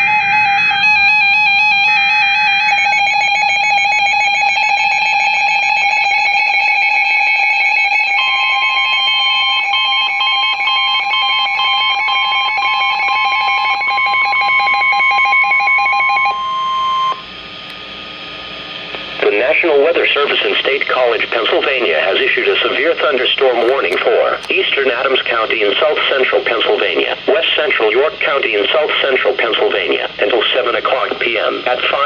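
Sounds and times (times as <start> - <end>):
high warning alarm tone: 0.0 - 17.2.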